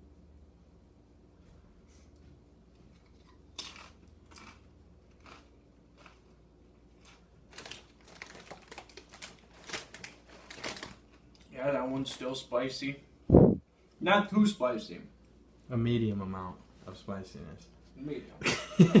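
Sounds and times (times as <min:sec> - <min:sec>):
tortilla chips crunching: 0:02.9 - 0:11.5.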